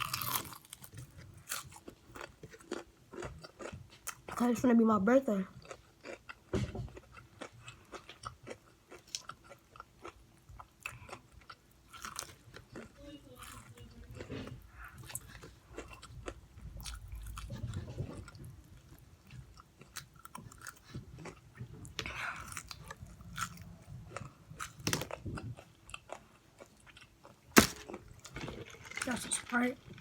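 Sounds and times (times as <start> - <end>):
crunchy bites: 0.0 - 3.7, 27.5 - 29.2
chewing fried food: 0.0 - 4.8, 5.5 - 30.0.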